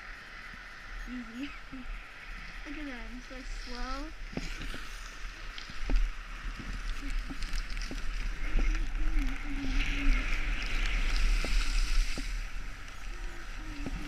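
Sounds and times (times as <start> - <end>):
wind rumbling on microphone: 0.0 - 14.0
skis scraping on snow: 3.2 - 14.0.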